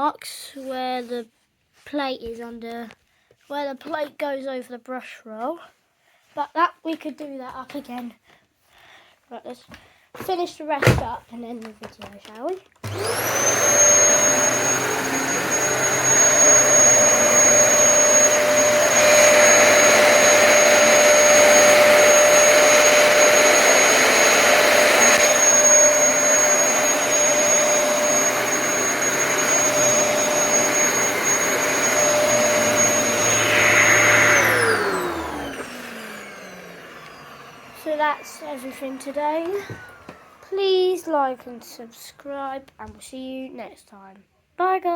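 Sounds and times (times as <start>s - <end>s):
vacuum motor spinning down: 12.8s - 40.5s
vacuum cleaner running: 12.8s - 41.7s.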